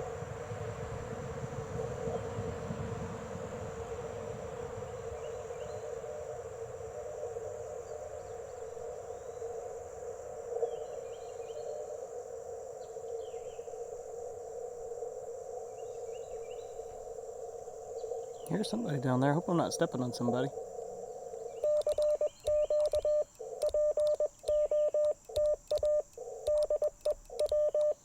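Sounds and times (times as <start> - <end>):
faint insect chirps: 0.0 - 28.0
insects buzzing: 0.0 - 28.0
radio receiver hiss: 18.5 - 20.6.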